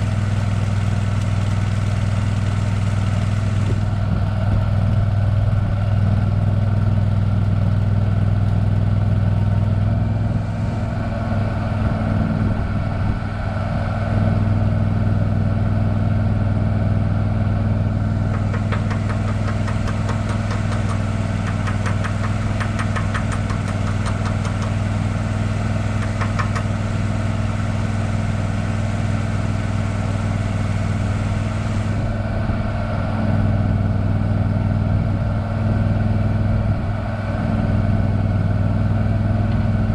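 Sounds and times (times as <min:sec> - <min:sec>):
engine running steadily: 0:00.0 - 0:39.9
fast rattling tick: 0:18.2 - 0:27.0.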